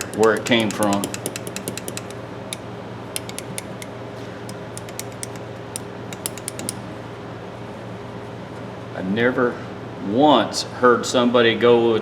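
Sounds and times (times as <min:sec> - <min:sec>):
pliers metallic clicks: 0:00.0 - 0:02.6, 0:03.2 - 0:03.9, 0:04.5 - 0:06.8
steady low hum: 0:00.0 - 0:08.8.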